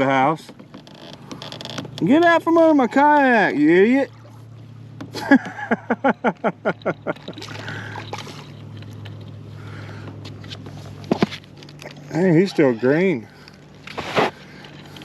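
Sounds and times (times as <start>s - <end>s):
water splashing against kayak hull: 0.0s - 12.3s
fish thrashing in water: 2.6s - 4.8s, 7.0s - 10.1s.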